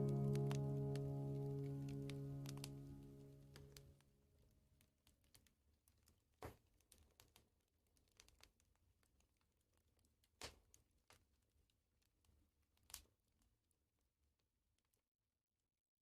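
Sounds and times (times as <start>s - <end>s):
loud fire snaps: 0.0s - 3.6s
wood fire crackling: 0.0s - 3.8s.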